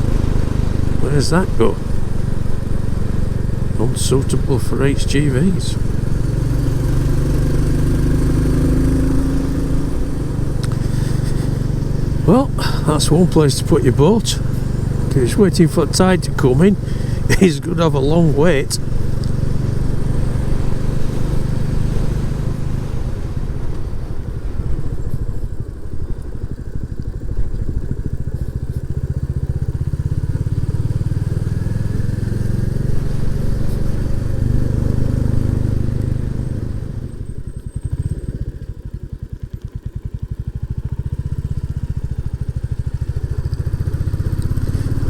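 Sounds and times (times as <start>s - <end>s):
motorcycle engine running: 0.0s - 45.0s.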